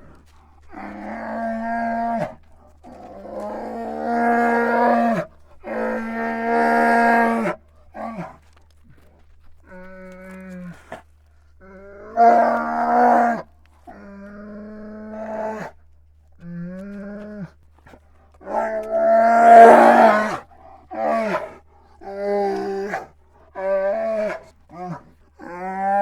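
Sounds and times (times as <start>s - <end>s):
grizzly bear bellowing: 18.4s - 26.0s.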